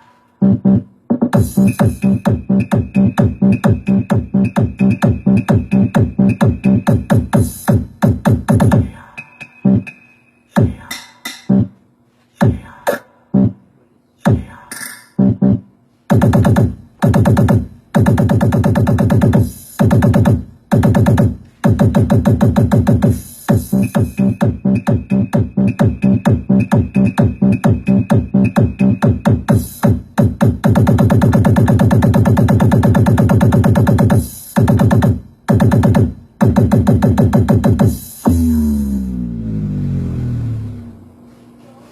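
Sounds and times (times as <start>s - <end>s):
sustained synth bass: 0.4s - 8.8s, 15.2s - 41.2s
deep drum machine hits: 15.2s - 41.0s
deep sliding bass note: 38.3s - 41.2s.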